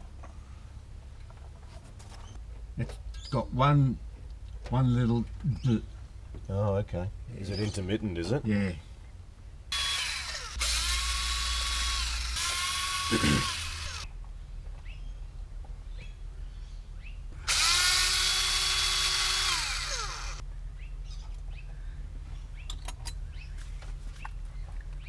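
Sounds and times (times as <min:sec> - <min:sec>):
power tool whining: 0:09.7 - 0:14.1, 0:17.4 - 0:20.4.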